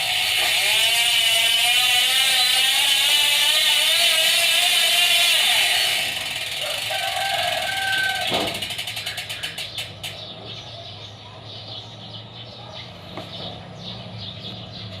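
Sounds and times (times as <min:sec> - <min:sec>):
bicycle hub freewheel clicking: 0:00.0 - 0:10.3
birds chirping: 0:06.9 - 0:15.0.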